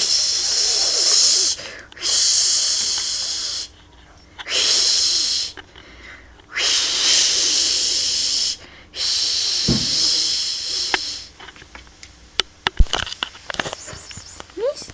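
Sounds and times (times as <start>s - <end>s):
cat hissing: 0.0s - 3.8s, 4.4s - 5.6s, 6.5s - 11.4s
thump: 9.7s - 10.1s.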